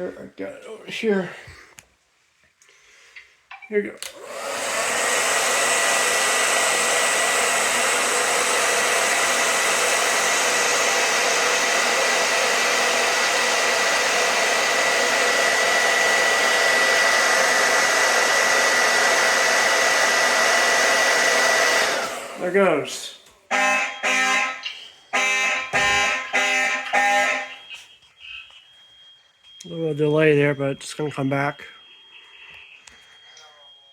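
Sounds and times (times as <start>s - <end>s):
hair dryer running: 4.0s - 22.9s.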